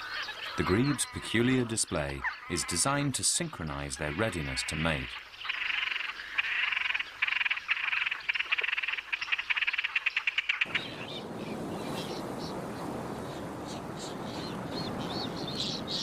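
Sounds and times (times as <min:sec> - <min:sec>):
grebes buzzy rattling calls: 0:00.0 - 0:11.2.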